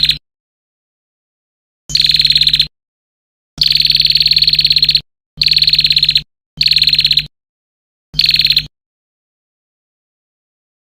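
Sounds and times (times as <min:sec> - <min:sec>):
buzzy pulsed bird trill: 0:00.0 - 0:00.2, 0:01.9 - 0:02.7, 0:03.6 - 0:07.3, 0:08.2 - 0:08.7.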